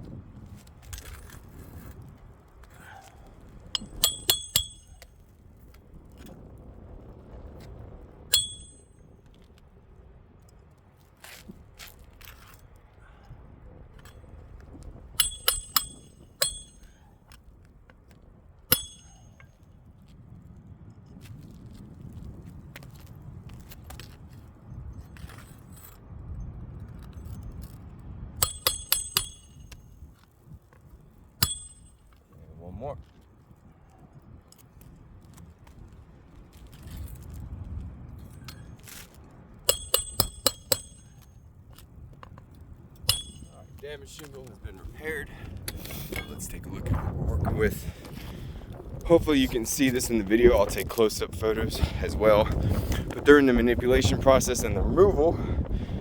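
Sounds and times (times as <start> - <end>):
hatchet striking nails: 3.8 - 5.1, 15.2 - 17.0, 18.7 - 19.4, 28.4 - 30.3, 31.4 - 32.1, 39.7 - 41.3, 43.0 - 44.4
scuffing on shingles: 10.9 - 12.7.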